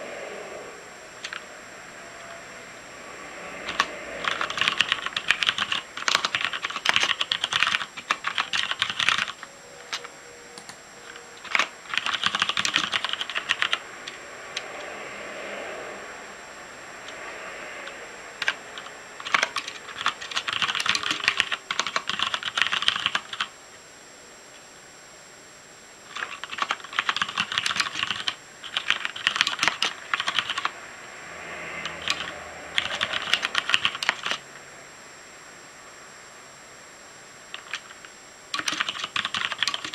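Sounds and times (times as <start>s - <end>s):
mechanical keyboard typing: 1.2s - 1.4s, 3.6s - 14.7s, 17.8s - 23.5s, 26.1s - 30.7s, 31.8s - 34.4s, 37.5s - 39.9s.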